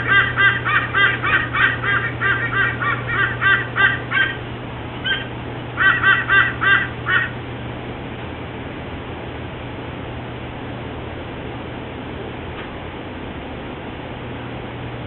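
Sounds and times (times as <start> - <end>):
eagle calling: 0.0 - 7.4.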